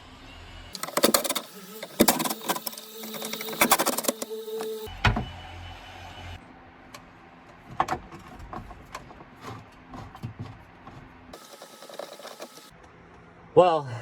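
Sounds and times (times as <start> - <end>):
hands clicking and tapping trim panels: 7.0 - 12.7.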